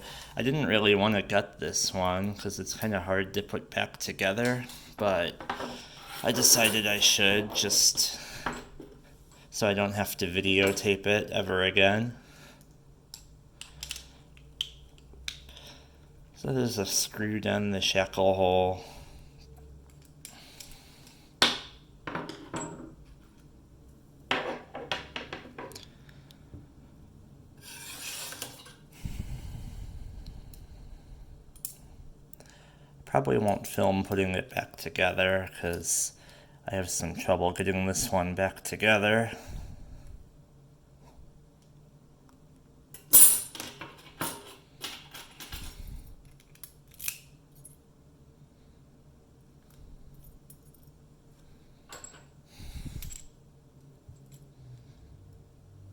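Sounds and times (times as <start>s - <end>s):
metal scraping: 5.4s - 8.0s, 27.6s - 28.7s.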